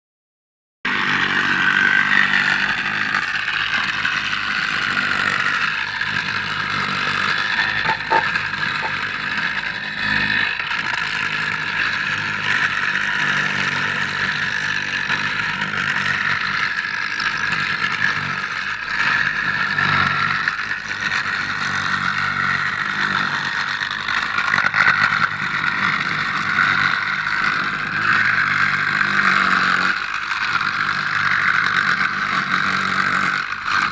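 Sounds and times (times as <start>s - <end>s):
vibrating tampers running: 1.3s - 10.4s.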